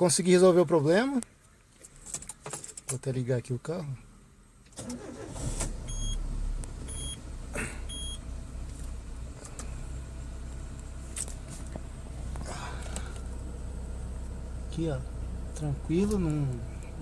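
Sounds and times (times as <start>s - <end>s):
car engine idling: 3.0s - 17.0s
dashboard warning beeps: 5.8s - 6.2s, 6.8s - 7.2s, 7.9s - 8.2s.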